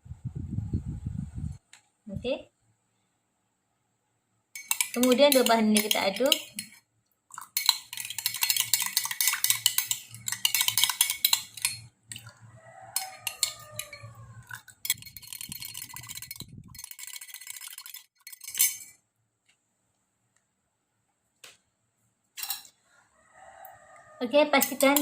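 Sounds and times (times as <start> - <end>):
spoon clinking against container: 4.6 - 19.0, 22.4 - 22.8, 24.6 - 25.0.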